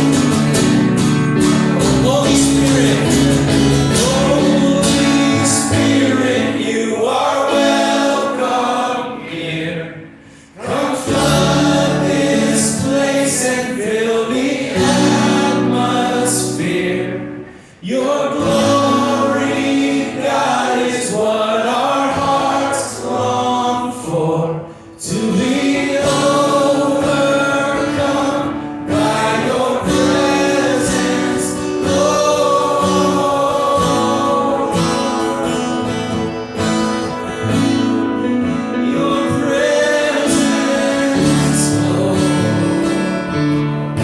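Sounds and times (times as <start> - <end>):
voices singing worship song: 0.0 - 44.0.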